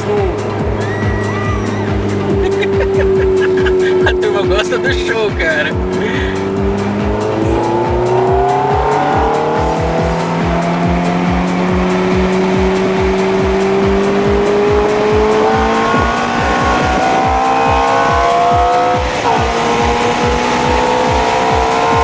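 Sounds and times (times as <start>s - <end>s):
car engine at high revs: 0.0s - 22.0s
music with a steady beat: 0.0s - 22.0s.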